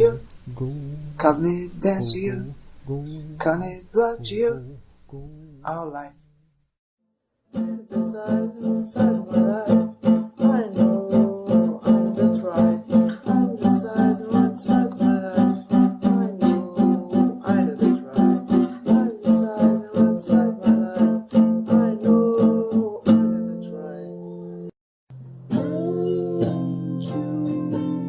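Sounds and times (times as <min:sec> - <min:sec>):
guitar strummed with melody: 0:07.5 - 0:28.0.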